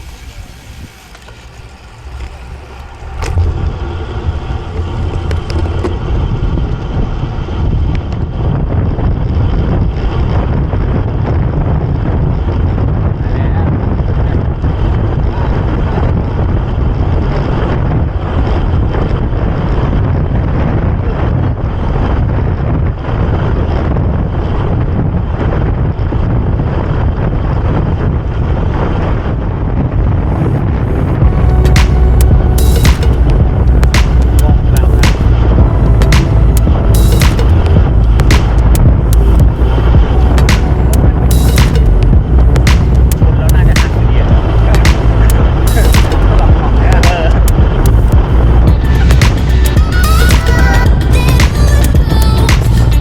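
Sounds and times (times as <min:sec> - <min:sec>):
wind buffeting microphone: 0:00.0 - 0:53.0.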